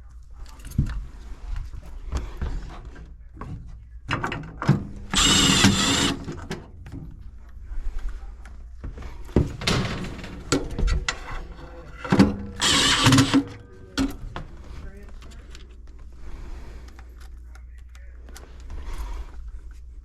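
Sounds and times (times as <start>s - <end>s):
power drill driving screw: 5.1s - 6.5s, 12.6s - 13.5s.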